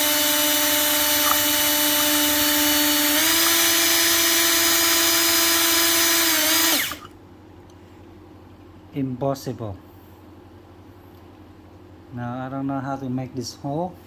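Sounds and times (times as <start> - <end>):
electric drill whining: 0.0 - 7.1.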